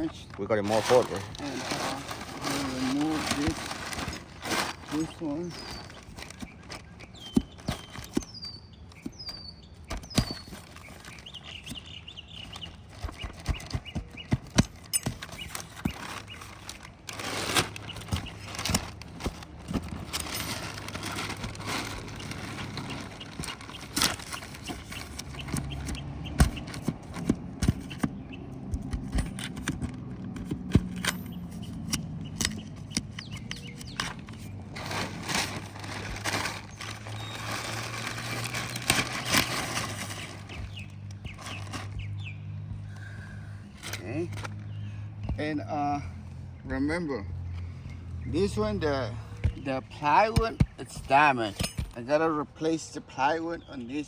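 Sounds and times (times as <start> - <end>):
shingle scraping: 0.0 - 45.6, 48.4 - 53.1
roof shingle knocks and clicks: 5.6 - 37.4, 49.4 - 52.0.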